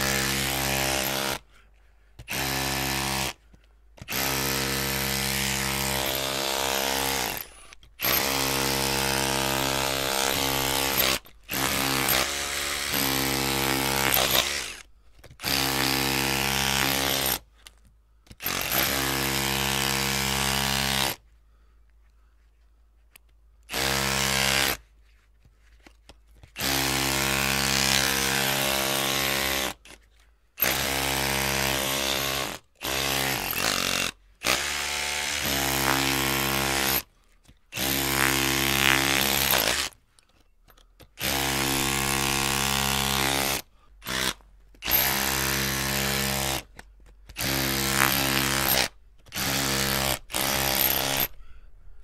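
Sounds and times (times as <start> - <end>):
electric drill motor: 4.1 - 17.4, 37.8 - 39.9, 41.2 - 46.6, 47.3 - 51.4.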